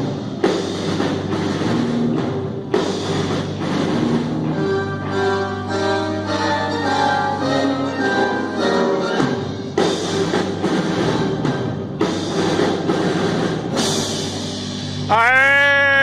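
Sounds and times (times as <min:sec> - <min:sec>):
heavy drum and cymbal hits: 0:00.0 - 0:04.5, 0:09.2 - 0:16.0
sustained instrumental notes: 0:03.5 - 0:12.3.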